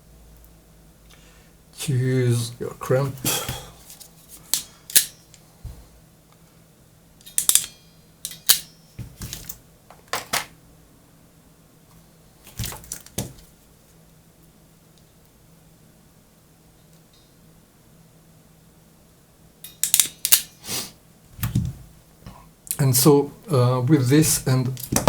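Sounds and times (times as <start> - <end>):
metallic clicks of hand tools: 7.2 - 8.7, 19.6 - 20.6.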